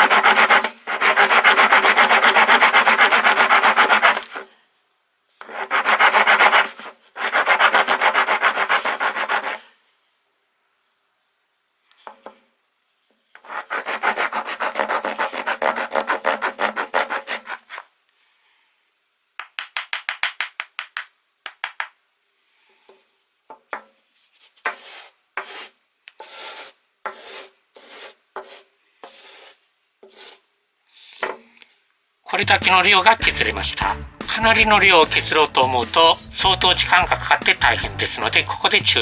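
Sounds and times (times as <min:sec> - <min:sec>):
wood rasp filing wood: 0:00.0 - 0:04.5, 0:05.4 - 0:09.7, 0:13.4 - 0:17.7, 0:24.7 - 0:30.4.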